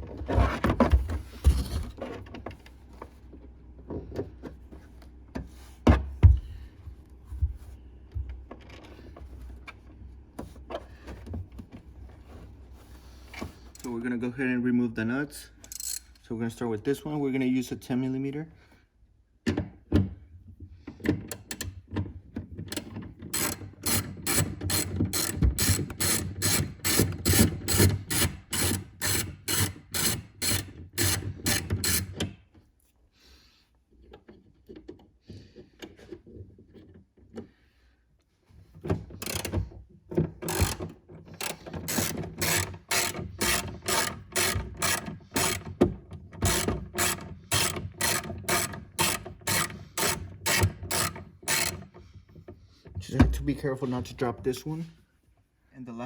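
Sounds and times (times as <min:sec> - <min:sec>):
hand ratchet clicking: 0:15.6 - 0:16.2, 0:22.8 - 0:32.2, 0:39.2 - 0:39.6, 0:40.4 - 0:52.0.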